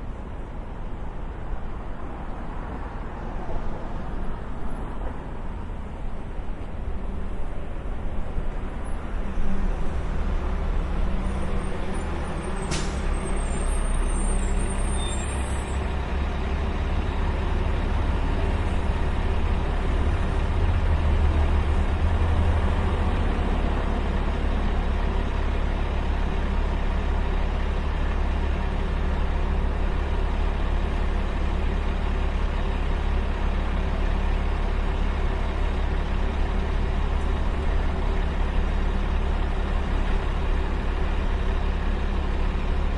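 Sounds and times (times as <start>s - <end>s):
street traffic rumble: 0.0s - 42.9s
brief high-pitched squeal: 12.0s - 15.8s.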